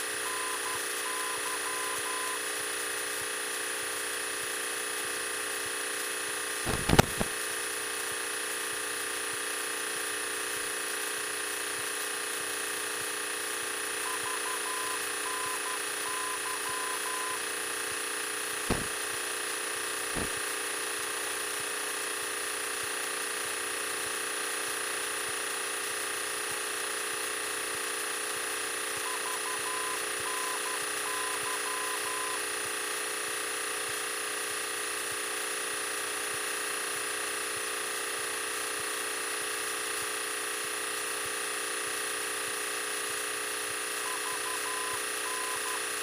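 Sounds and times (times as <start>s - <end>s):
faint short beeps: 0.2s - 2.4s, 14.1s - 17.4s, 29.1s - 32.4s, 44.0s - 45.9s.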